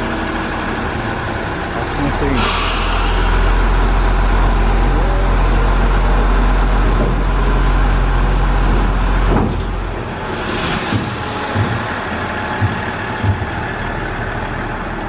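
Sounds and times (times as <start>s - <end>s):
diesel railcar engine idling: 0.0s - 15.0s
short burst of hiss: 2.4s - 3.7s.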